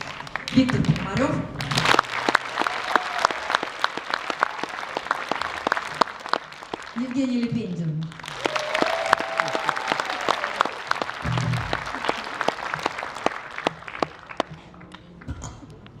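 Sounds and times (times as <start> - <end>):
audience applauding: 0.0 - 15.2.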